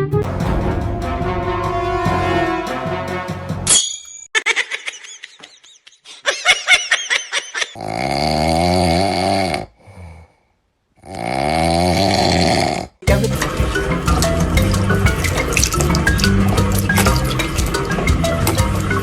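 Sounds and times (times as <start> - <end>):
pet snoring: 7.8 - 10.2, 11.0 - 12.9.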